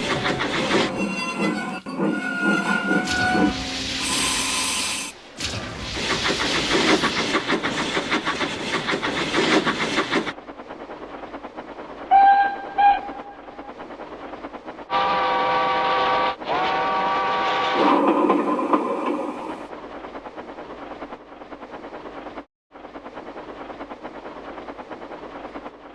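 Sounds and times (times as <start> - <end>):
toy train steam chuffing: 0.0 - 10.4
toy train whistle: 12.1 - 13.2.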